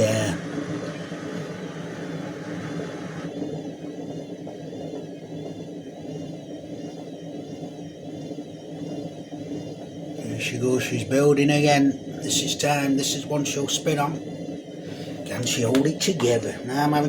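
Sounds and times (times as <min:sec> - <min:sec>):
washing machine motor hum: 0:00.0 - 0:05.2, 0:08.7 - 0:17.0.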